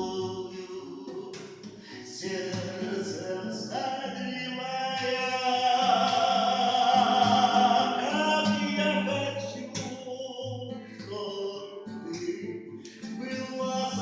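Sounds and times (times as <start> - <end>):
group of voices singing: 0.0 - 10.0.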